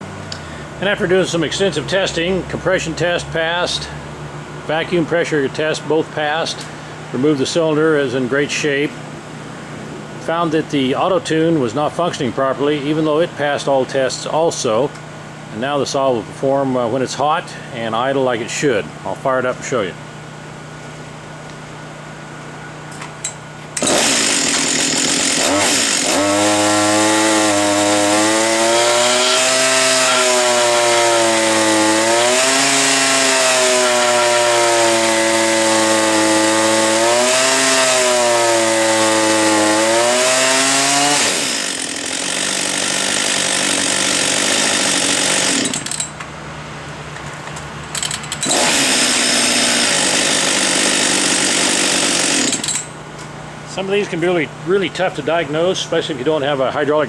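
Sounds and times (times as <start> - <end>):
chainsaw idling and revving: 0.2 - 9.2, 23.2 - 46.2, 47.8 - 53.0.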